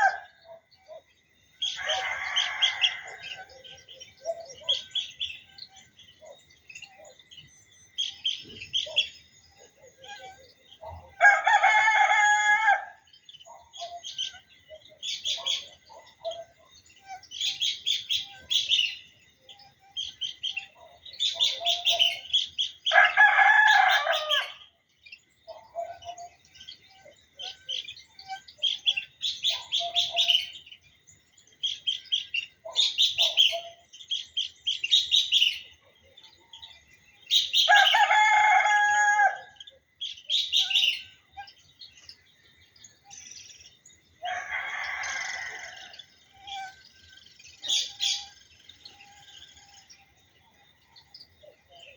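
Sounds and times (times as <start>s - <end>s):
rooster crowing: 0.0s - 0.3s, 1.7s - 3.6s, 11.2s - 13.0s, 22.9s - 24.6s, 37.7s - 39.6s, 44.2s - 46.1s
small birds chirping: 0.0s - 51.9s.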